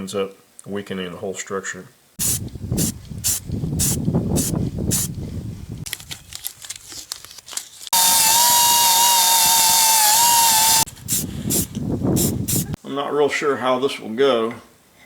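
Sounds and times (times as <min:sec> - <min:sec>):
drill press drilling metal: 0:08.0 - 0:10.9.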